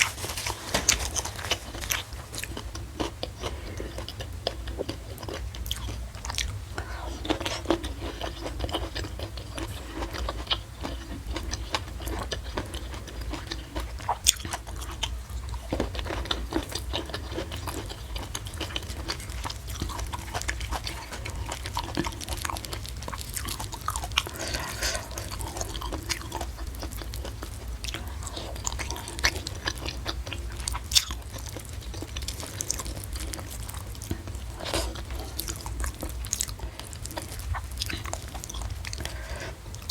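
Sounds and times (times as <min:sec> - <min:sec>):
crunchy chewing and biting: 0:00.0 - 0:39.9.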